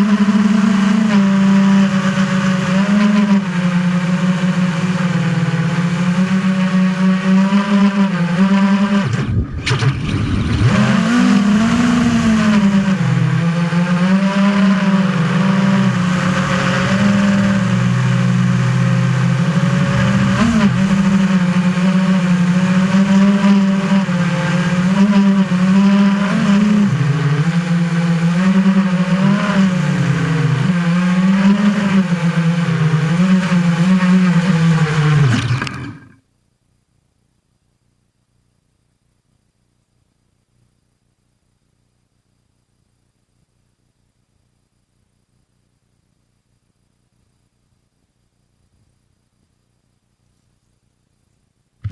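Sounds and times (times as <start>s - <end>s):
drone propellers whirring: 0.0s - 36.2s.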